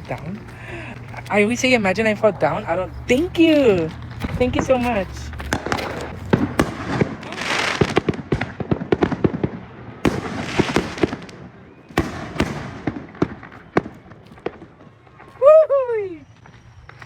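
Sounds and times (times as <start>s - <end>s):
fireworks booms: 3.2s - 15.5s
fireworks bangs and pops: 3.5s - 15.5s
hissing crackling firework showers: 5.2s - 17.0s.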